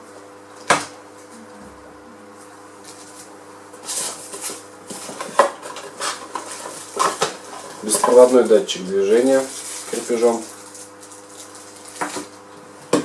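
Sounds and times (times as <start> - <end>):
rustling and clatter of small items: 2.8 - 12.4.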